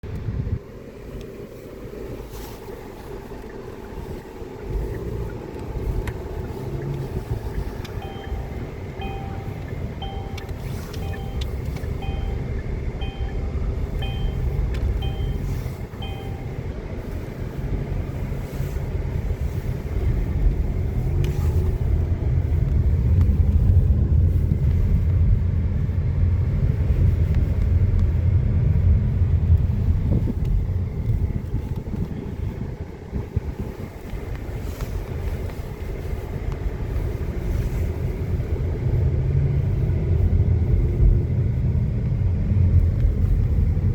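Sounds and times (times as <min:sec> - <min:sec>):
repeating electronic beep: 0:08.0 - 0:16.6
gusty wind on microphone: 0:17.1 - 0:43.9.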